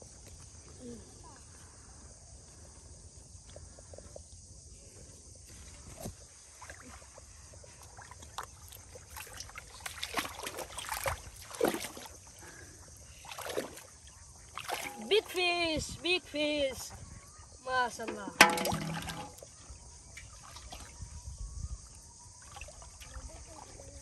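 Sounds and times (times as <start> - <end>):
water splashing and sloshing: 5.5 - 24.0.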